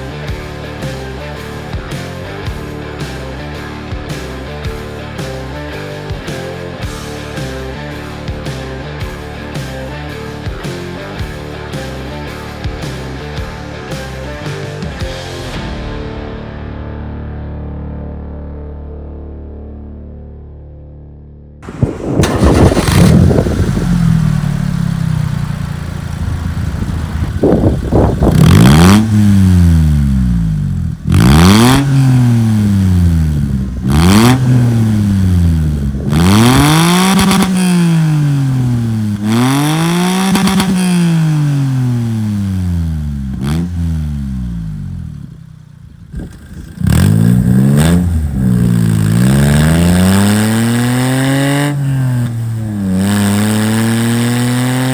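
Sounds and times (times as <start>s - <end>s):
small engine revving: 21.6s - 54.9s.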